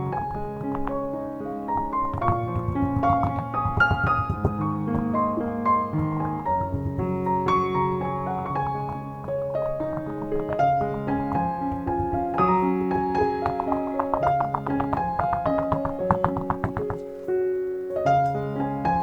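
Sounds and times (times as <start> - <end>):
gentle piano music: 0.0 - 19.0.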